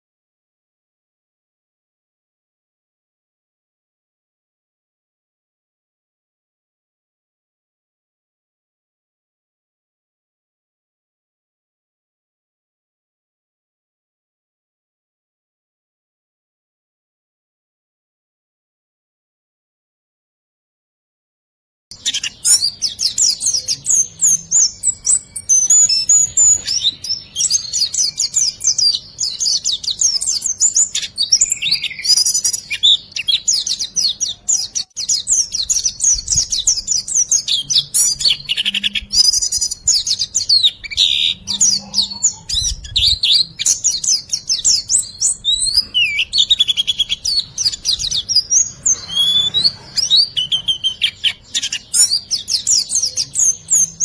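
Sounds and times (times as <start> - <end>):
songbird singing chirps and trills: 21.9 - 54.0.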